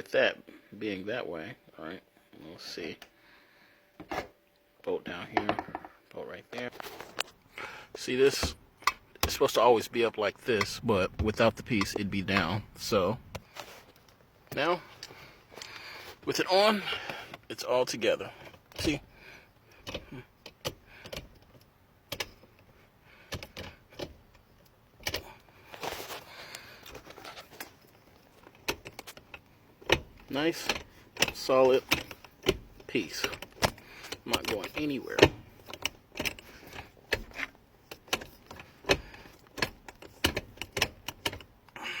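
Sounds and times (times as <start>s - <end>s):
gear shifter clicks and clunks: 8.3s - 41.8s.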